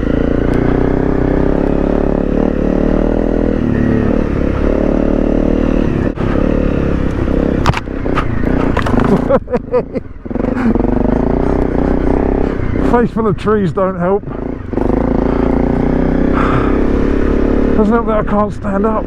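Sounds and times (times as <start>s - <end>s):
motorcycle engine running: 0.0s - 19.0s
sharp knocks and scrapes: 7.0s - 9.3s.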